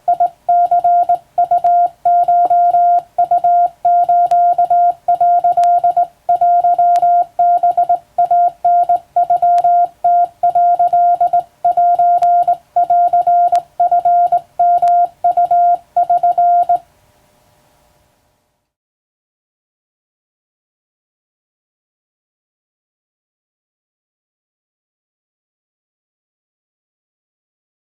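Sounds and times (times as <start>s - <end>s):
morse code tone: 0.0s - 16.8s.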